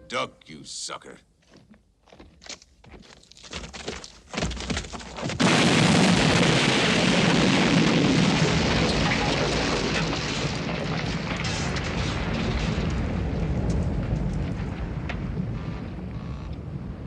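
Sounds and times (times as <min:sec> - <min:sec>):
dynamite explosion blast: 0:05.4 - 0:17.0
heavy rumble: 0:07.1 - 0:17.0.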